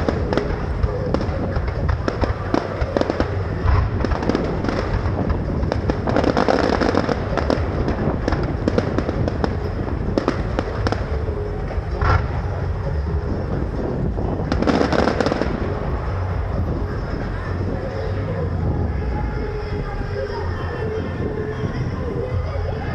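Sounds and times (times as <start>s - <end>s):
fireworks cracking and popping: 0.0s - 17.8s.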